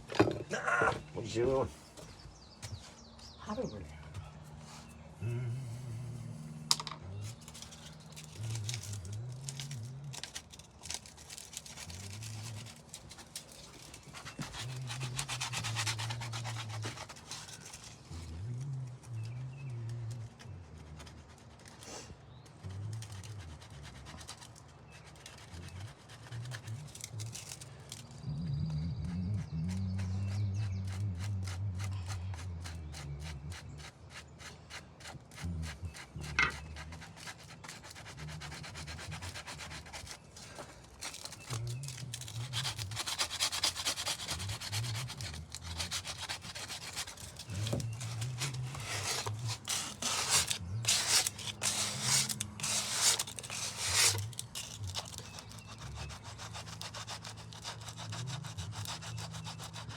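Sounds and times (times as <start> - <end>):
hand sanding strokes: 10.8 - 17.8, 30.0 - 59.9.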